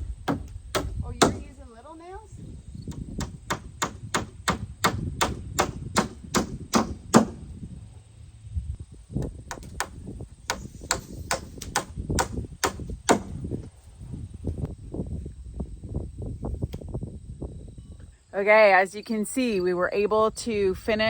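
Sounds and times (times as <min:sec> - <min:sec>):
hammer driving nails into wood: 0:02.9 - 0:07.4, 0:09.5 - 0:13.4.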